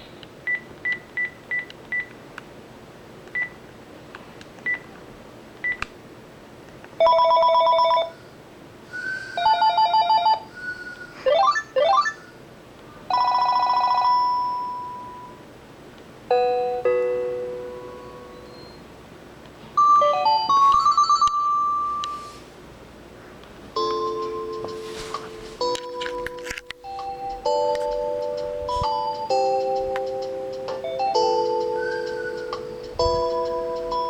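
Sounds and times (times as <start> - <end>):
phone ringtones: 7.0 - 8.2, 9.4 - 10.5, 11.2 - 12.3, 13.1 - 15.4, 19.8 - 22.3, 23.8 - 25.0.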